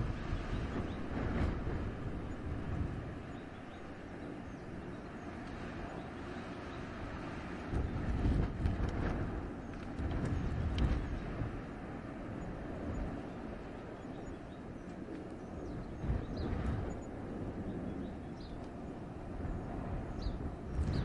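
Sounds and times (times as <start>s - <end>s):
low rumble: 0.0s - 14.2s
wind gusting through forest: 0.0s - 21.0s
faint clicks: 14.8s - 15.4s, 18.6s - 18.8s.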